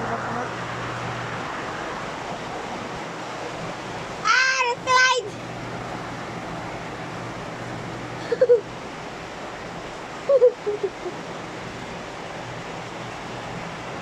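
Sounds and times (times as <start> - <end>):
heavy rain and rushing floodwater: 0.0 - 14.0.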